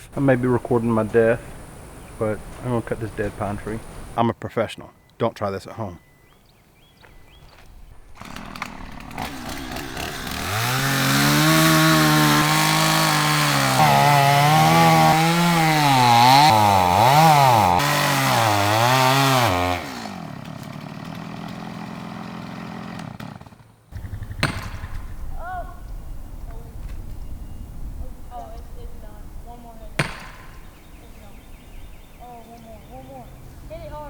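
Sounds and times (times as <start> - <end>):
chainsaw cutting wood: 3.2 - 4.2, 8.1 - 25.0.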